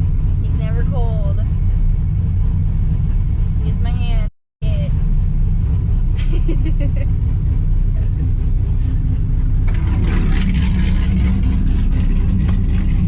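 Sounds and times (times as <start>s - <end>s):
car engine rumbling: 0.0s - 13.0s.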